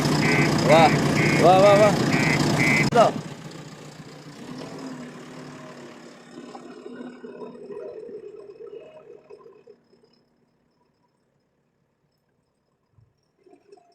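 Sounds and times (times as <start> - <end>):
diesel engine running faintly: 0.0 - 7.2.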